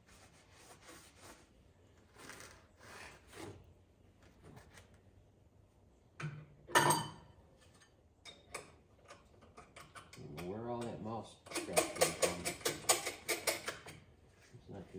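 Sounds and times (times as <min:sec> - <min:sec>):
tools being handled and rubbed: 0:00.0 - 0:03.6.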